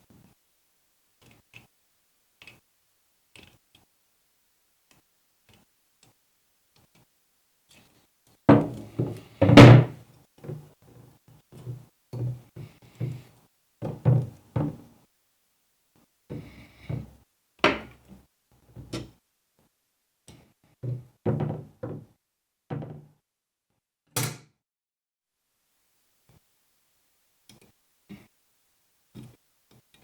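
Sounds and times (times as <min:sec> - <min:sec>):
hard parts knocking and thunking: 0:08.5 - 0:10.6.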